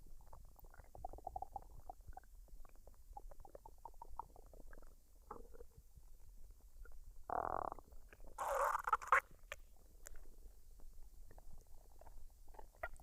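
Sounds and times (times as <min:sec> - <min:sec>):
stomach gurgling: 0:00.0 - 0:13.0.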